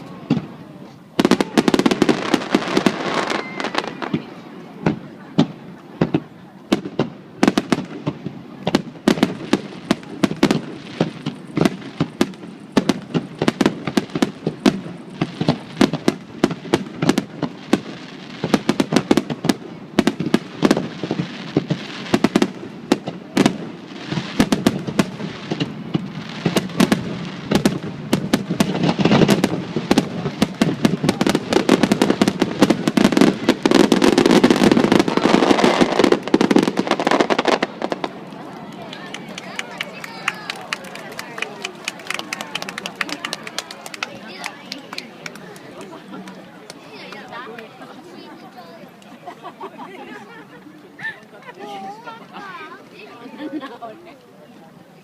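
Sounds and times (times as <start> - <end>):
fireworks bursting: 0.0 - 47.6
fireworks crackling: 0.0 - 53.8.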